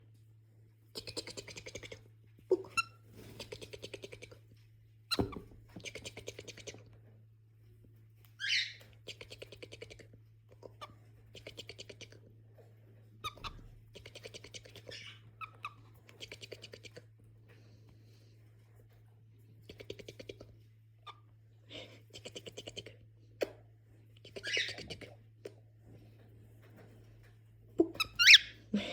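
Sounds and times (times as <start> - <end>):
cockatiel chattering: 24.3 - 25.0.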